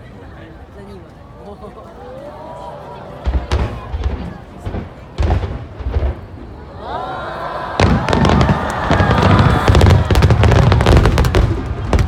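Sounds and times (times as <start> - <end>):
deep firework booms: 3.2 - 6.6, 7.8 - 12.0
firework bangs and crackling: 3.2 - 6.7, 7.7 - 12.0.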